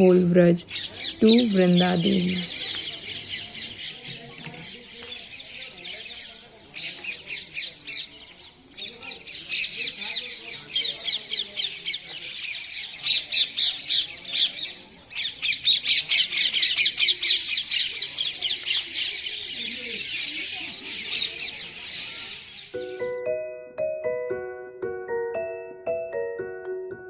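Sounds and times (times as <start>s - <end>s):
parrots squawking and screeching: 0.6s - 4.1s.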